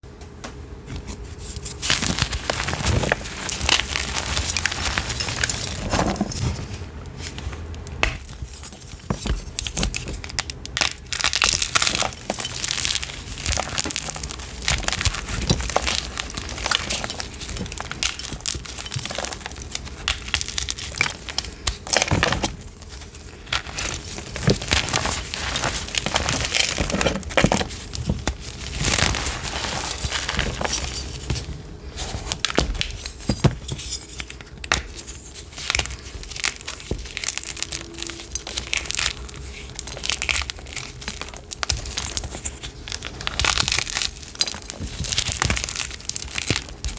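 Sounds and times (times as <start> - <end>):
chalk being crushed: 1.4 - 6.4, 8.0 - 46.9.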